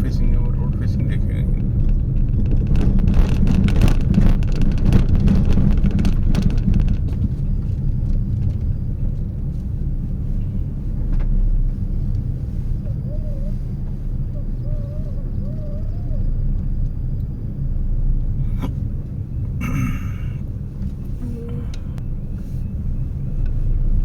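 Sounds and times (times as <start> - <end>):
car driving rumble: 0.0 - 24.0
crackling knocks and rattles: 1.5 - 10.0.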